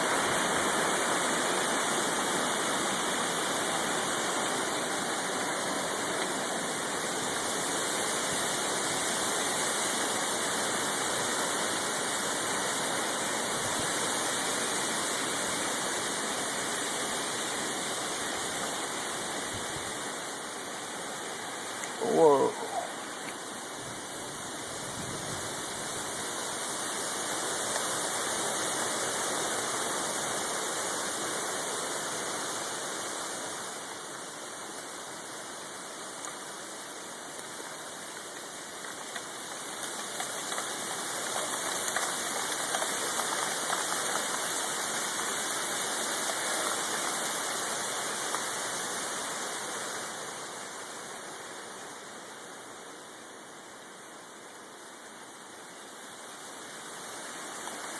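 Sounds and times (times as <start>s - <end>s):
strong gusting wind: 22.0s - 26.3s.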